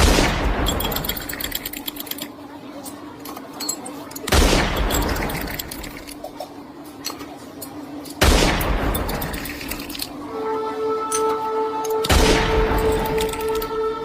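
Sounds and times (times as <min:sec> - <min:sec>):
loud booms: 0:00.0 - 0:01.0, 0:08.2 - 0:09.2, 0:12.1 - 0:13.1.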